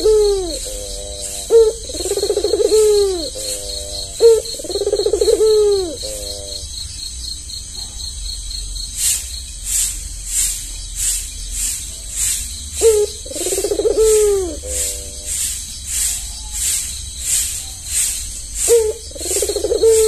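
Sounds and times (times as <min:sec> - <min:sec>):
dove cooing: 0:00.0 - 0:06.8, 0:12.8 - 0:15.5, 0:18.6 - 0:20.0.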